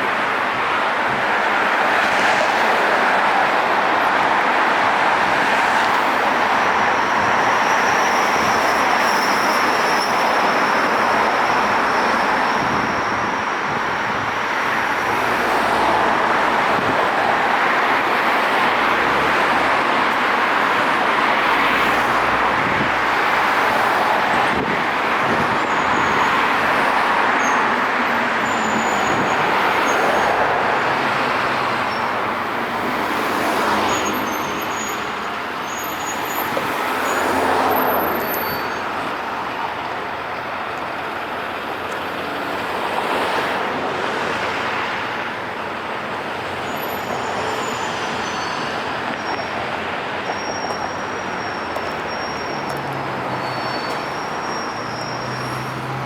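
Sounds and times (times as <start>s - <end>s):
road traffic passing: 0.0s - 56.0s.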